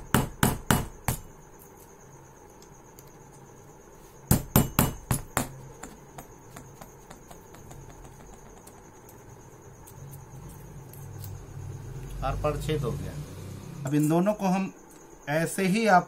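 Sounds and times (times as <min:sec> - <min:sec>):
hammer striking nail in metal: 0:04.3 - 0:05.6.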